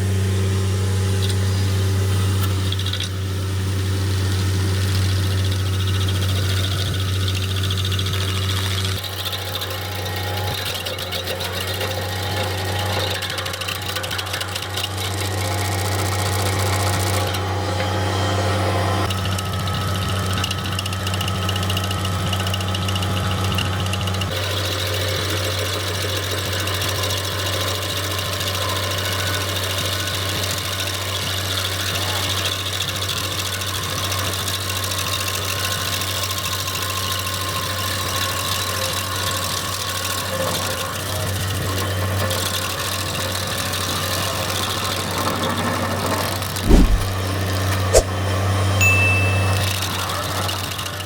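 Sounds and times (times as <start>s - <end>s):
loader engine hum: 0.0s - 8.9s
stump grinder machine noise: 0.0s - 19.4s.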